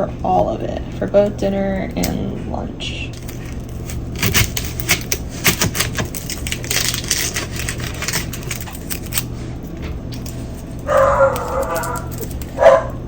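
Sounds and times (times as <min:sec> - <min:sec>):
dog barking: 0:10.8 - 0:13.0.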